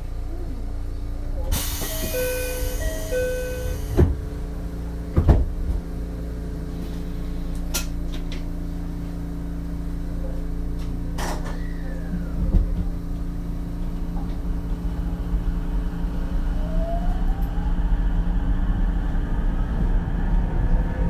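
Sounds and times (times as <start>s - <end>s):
railcar humming drone: 0.0s - 10.3s, 11.9s - 21.0s
train doors closing thuds: 1.5s - 4.3s, 5.1s - 5.9s
two-note electronic chime: 1.9s - 3.9s.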